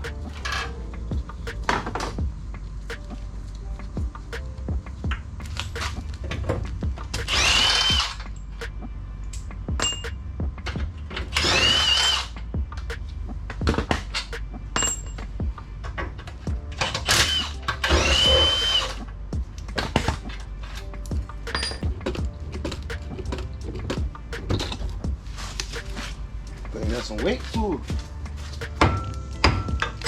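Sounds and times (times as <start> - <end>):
power tool whining: 7.2 - 8.2, 11.3 - 12.3, 16.9 - 19.0
metal tools clicking and knocking: 21.5 - 24.9.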